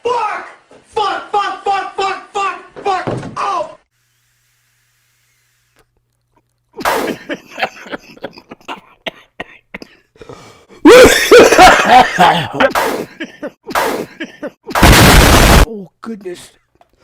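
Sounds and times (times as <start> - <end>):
man coughing: 6.8 - 10.1, 10.8 - 14.7.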